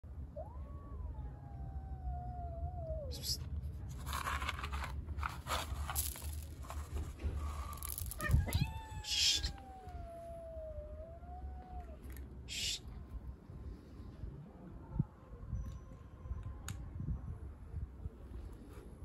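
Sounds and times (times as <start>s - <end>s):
cat yowling: 0.3s - 3.2s, 8.2s - 12.8s
crunching and rustling: 3.6s - 8.7s.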